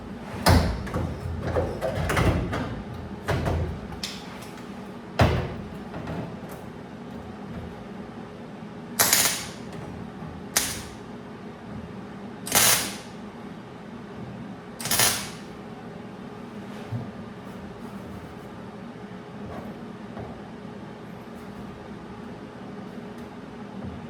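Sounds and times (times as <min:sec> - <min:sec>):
welder tack welding bursts: 0:09.0 - 0:09.6, 0:10.6 - 0:11.0, 0:12.5 - 0:13.1, 0:14.8 - 0:15.5.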